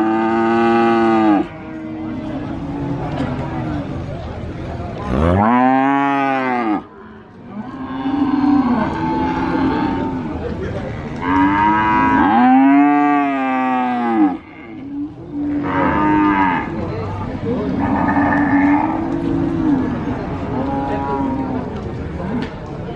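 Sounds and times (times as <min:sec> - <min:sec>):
cow mooing loudly: 0:00.0 - 0:03.3, 0:05.0 - 0:06.9, 0:11.2 - 0:16.8, 0:17.7 - 0:21.6
quieter moos from other cattle: 0:05.0 - 0:16.8, 0:17.6 - 0:22.4.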